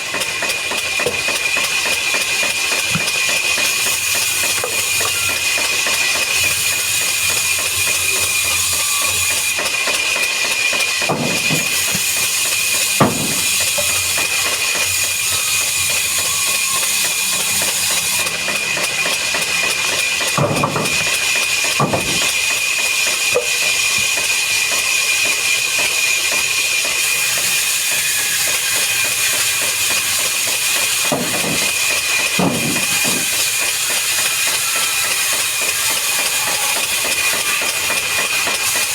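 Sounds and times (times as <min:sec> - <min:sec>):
woodworking machinery whining: 0:00.0 - 0:38.9
sharp knocks: 0:11.1 - 0:12.0, 0:13.0 - 0:13.9, 0:20.4 - 0:21.1, 0:21.8 - 0:22.3, 0:31.0 - 0:31.8, 0:32.4 - 0:33.4.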